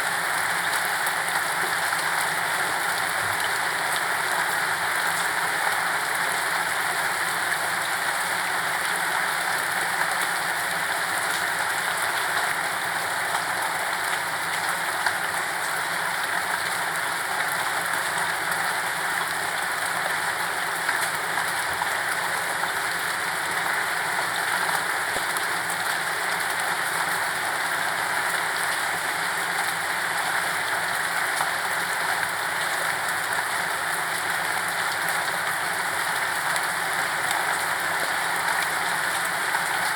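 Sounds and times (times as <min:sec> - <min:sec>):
steady rainfall: 0:00.0 - 0:39.9
rain drop ticks: 0:13.2 - 0:27.5.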